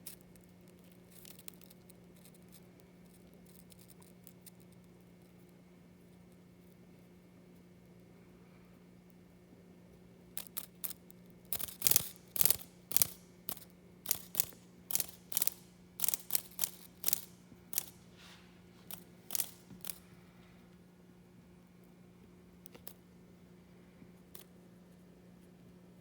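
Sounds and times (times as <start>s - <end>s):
faint low hum: 0.0s - 26.0s
cicada wings rattling: 10.4s - 18.0s, 18.9s - 20.0s.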